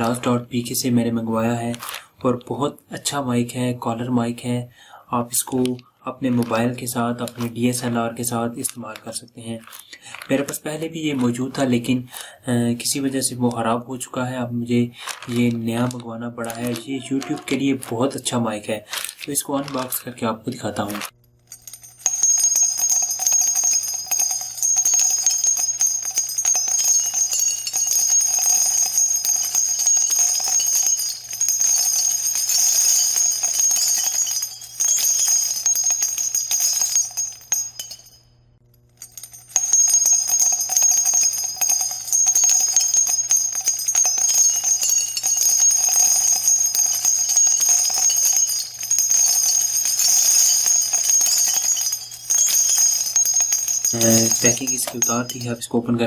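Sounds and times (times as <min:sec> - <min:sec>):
background music with ringing bells: 0:21.6 - 0:38.2, 0:39.2 - 0:55.6.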